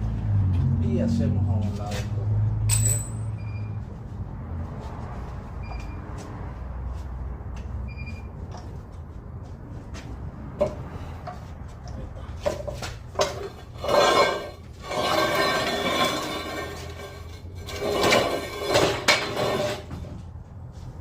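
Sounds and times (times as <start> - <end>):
metal tools clinking and clattering: 2.7 - 3.4.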